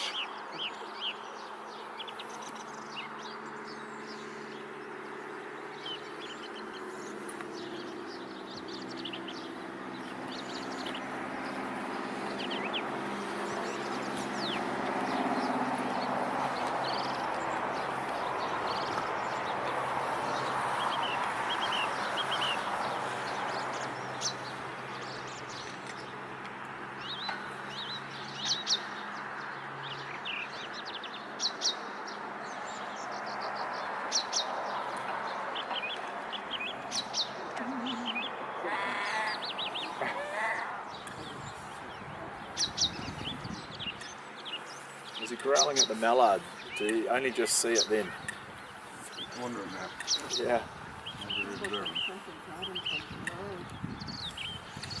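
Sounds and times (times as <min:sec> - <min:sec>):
small birds chirping: 0:00.0 - 0:55.0
coots clanking calls: 0:37.2 - 0:41.4
grebe harsh growly squawk: 0:37.8 - 0:40.9.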